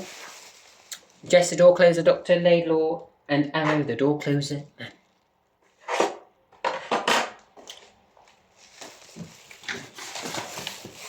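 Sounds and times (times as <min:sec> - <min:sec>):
packaging rustling: 0:00.0 - 0:01.2, 0:08.4 - 0:11.0
scrapes and knocks: 0:05.7 - 0:07.4.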